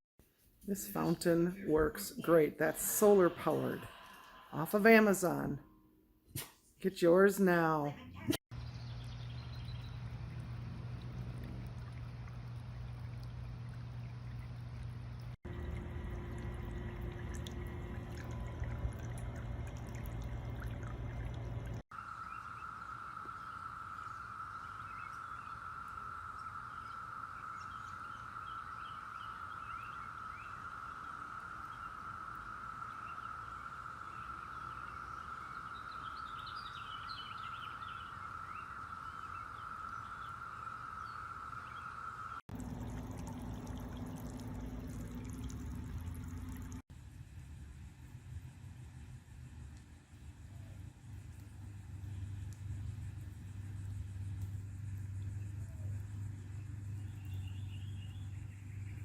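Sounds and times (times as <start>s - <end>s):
fountain water spraying and trickling: 8.6s - 21.8s, 42.5s - 46.8s.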